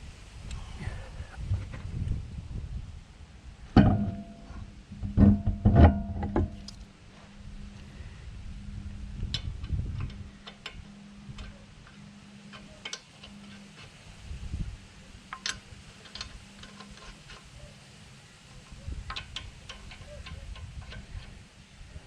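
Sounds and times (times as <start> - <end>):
low hum: 0.0 - 22.0
metallic clicks of hand tools: 11.4 - 13.9, 15.3 - 17.5, 18.6 - 21.4.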